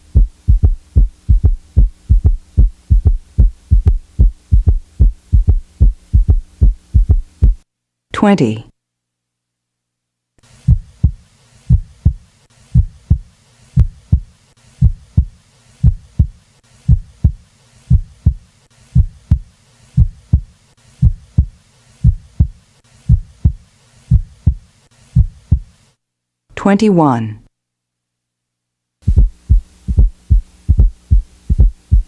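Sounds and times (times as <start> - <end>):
heartbeat lub-dub: 0.0 - 7.6, 10.7 - 18.4, 19.0 - 25.8, 29.0 - 32.0.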